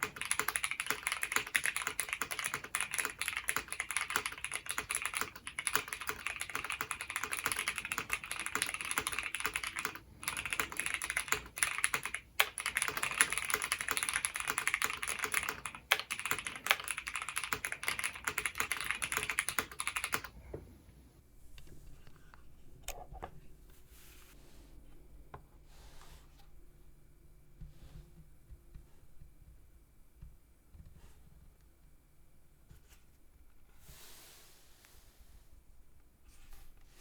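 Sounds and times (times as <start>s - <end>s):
fast typing on mechanical keyboard: 0.0s - 20.3s.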